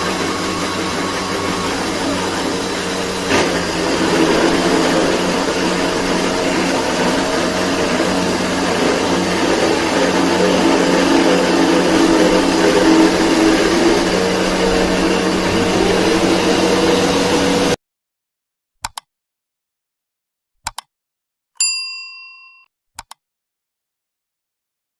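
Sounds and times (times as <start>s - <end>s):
machine motor running: 0.0s - 17.8s
quick clicks: 20.6s - 20.9s, 23.0s - 23.2s
bell-like ding: 21.6s - 22.7s.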